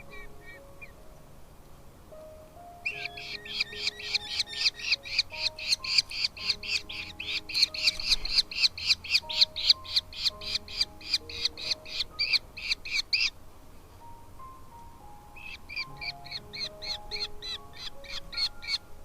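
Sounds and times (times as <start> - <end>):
falcon chicks begging calls: 0.0 - 1.0, 2.8 - 13.4, 15.4 - 18.9
faint background music: 0.0 - 19.0.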